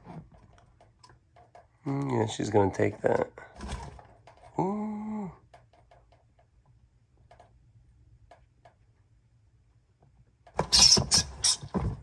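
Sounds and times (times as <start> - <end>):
faint irregular clicks and taps: 8.2 - 9.1.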